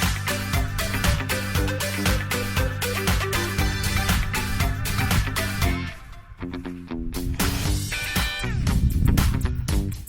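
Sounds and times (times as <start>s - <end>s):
dance music: 0.0s - 6.2s.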